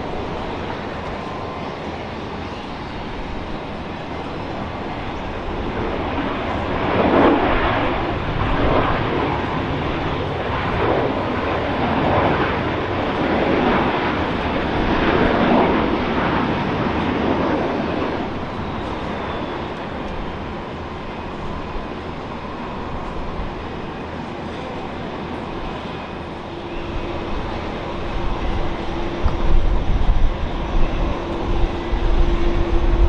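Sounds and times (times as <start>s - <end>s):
jet airliner engines rushing: 0.0s - 33.0s.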